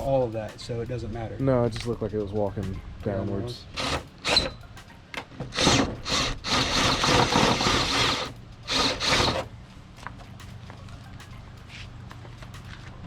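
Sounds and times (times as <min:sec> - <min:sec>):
cutting tool rasping: 0:03.7 - 0:04.6, 0:05.4 - 0:09.5.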